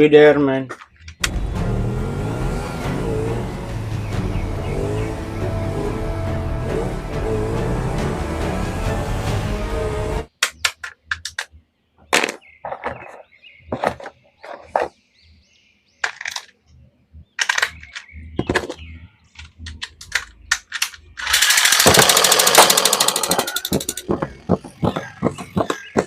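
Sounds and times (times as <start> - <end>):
loud rapid rattling: 21.3 - 24.3.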